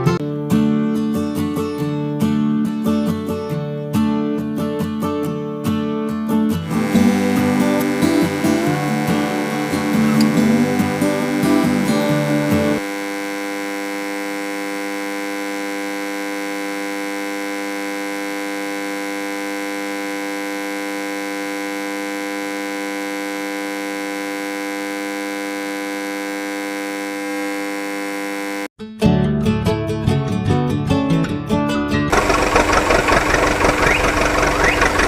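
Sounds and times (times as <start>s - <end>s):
strummed guitar music: 0.0s - 12.8s, 28.8s - 33.2s
held electronic chord drone: 6.6s - 28.7s.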